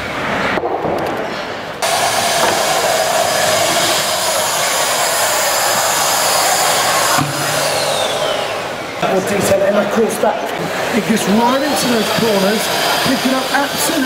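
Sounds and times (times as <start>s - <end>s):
vacuum cleaner running: 1.8s - 9.6s, 10.6s - 14.0s.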